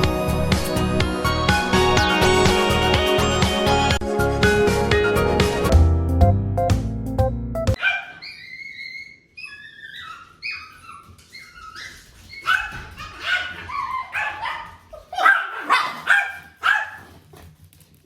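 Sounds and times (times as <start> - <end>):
dog whining: 7.8 - 15.8.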